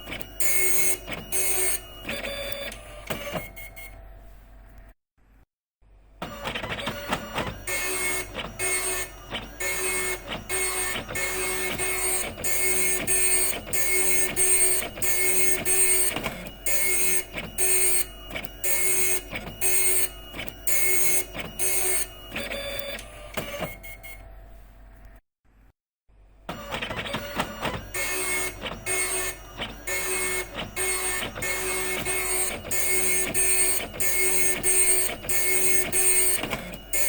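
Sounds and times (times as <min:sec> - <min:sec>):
dot matrix print-head buzzing: 0:00.0 - 0:02.2, 0:07.7 - 0:22.4, 0:27.9 - 0:37.0
printer whirring: 0:00.0 - 0:04.1, 0:06.2 - 0:24.4, 0:26.5 - 0:37.0.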